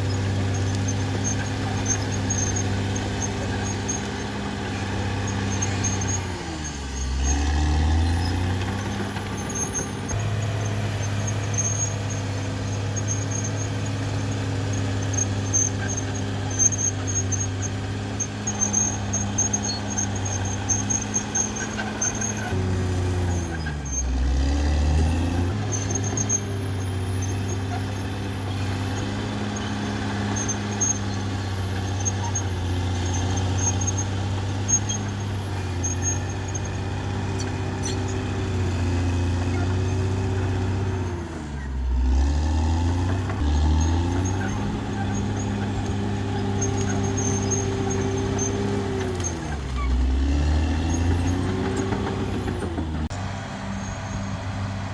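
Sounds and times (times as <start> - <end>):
bulldozer diesel engine under load: 0.0 - 54.9
thin high squeal: 0.2 - 22.6, 25.1 - 38.4, 43.7 - 52.0.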